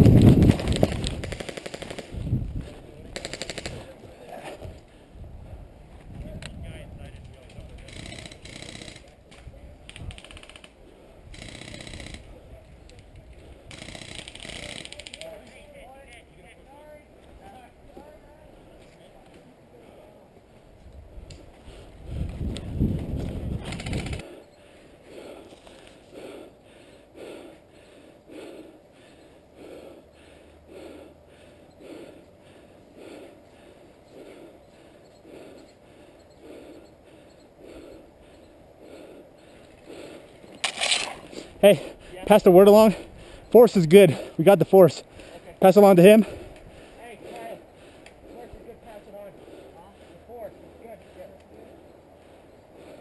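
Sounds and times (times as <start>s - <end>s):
airsoft guns firing full-auto: 0.4s - 2.2s, 3.1s - 3.9s, 13.7s - 15.2s
person breathing: 24.0s - 40.6s, 41.2s - 42.3s, 42.9s - 43.5s, 45.0s - 45.6s, 46.2s - 48.7s, 49.3s - 53.0s.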